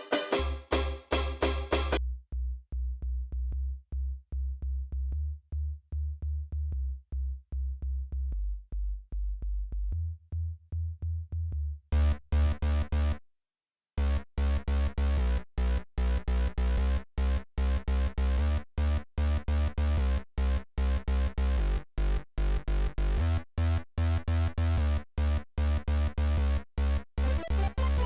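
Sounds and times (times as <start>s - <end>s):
bright stabbed synth chords: 0.0s - 2.0s, 27.2s - 28.0s
pulsing synth bass line: 0.0s - 2.0s, 27.2s - 28.0s.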